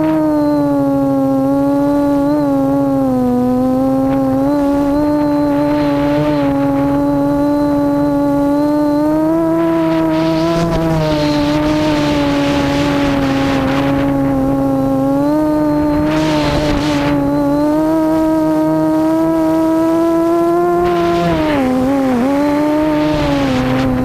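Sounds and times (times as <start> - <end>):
drone motors humming: 0.0 - 24.0
rushing noise: 4.0 - 18.3.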